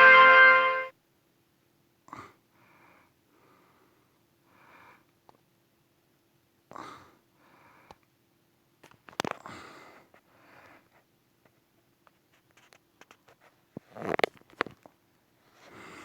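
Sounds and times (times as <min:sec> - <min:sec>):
faint sniffs and breaths: 0:09.4 - 0:11.1, 0:15.4 - 0:16.0.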